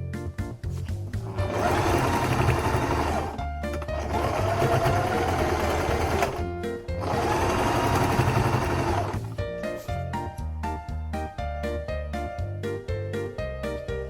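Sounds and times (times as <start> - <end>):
background music: 0.0 - 14.0
electric sewing machine stitching: 1.2 - 9.4.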